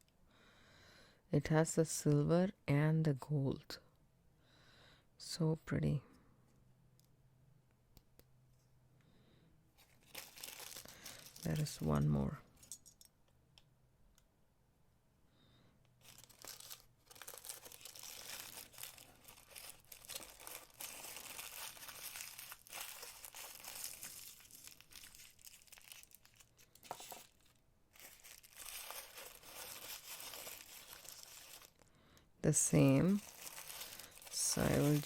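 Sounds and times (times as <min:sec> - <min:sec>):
packing paper crinkling and tearing: 0:09.8 - 0:12.1, 0:16.0 - 0:31.8, 0:32.5 - 0:35.0.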